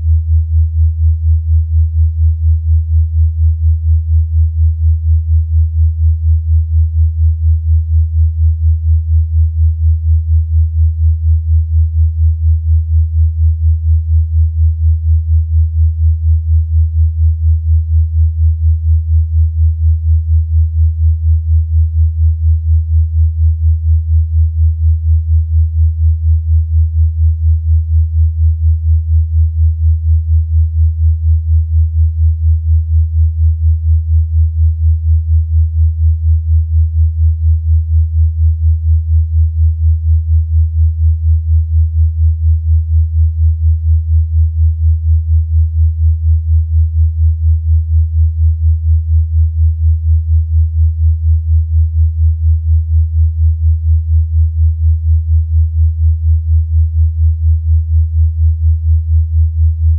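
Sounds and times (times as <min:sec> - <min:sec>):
low pulsing sine tone: 0:00.0 - 0:59.9.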